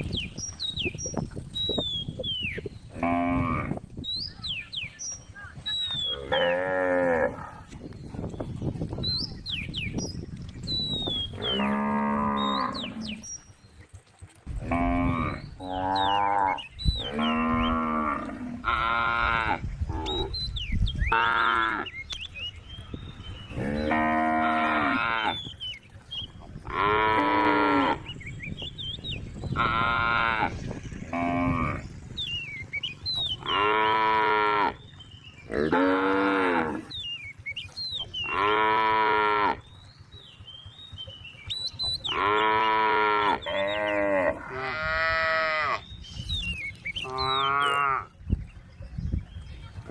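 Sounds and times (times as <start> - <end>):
cows mooing: 2.9 - 3.8, 5.9 - 7.8, 11.2 - 13.3, 14.6 - 20.4, 21.1 - 22.0, 23.5 - 25.6, 26.6 - 28.2, 29.5 - 32.0, 33.2 - 37.0, 38.2 - 39.8, 41.9 - 45.9, 47.0 - 48.2.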